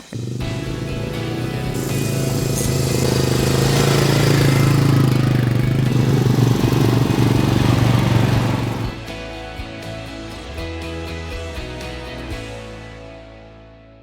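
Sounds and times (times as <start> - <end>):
vehicle engine running: 0.0 - 9.1.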